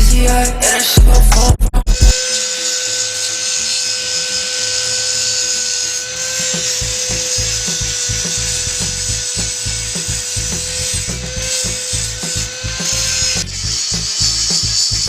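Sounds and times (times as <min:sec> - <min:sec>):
background music: 0:00.0 - 0:02.1.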